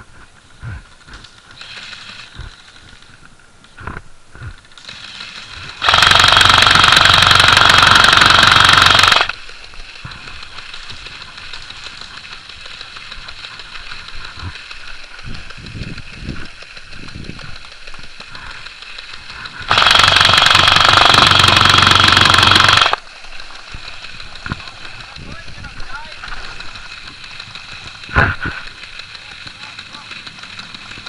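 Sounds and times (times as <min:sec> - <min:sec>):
airsoft gun full-auto burst: 0:04.8 - 0:09.4, 0:18.6 - 0:23.0.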